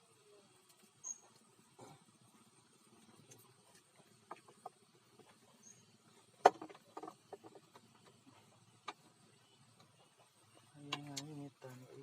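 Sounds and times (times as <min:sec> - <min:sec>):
faint clicks and taps: 0:06.4 - 0:11.8.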